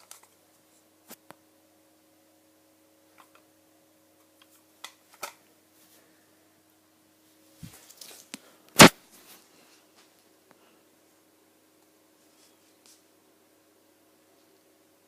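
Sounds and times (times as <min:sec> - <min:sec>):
clicks and handling noises: 0:00.0 - 0:01.4, 0:03.1 - 0:03.5, 0:04.2 - 0:05.5
faint steady hum: 0:00.0 - 0:15.0
loud sharp click: 0:08.8 - 0:09.0.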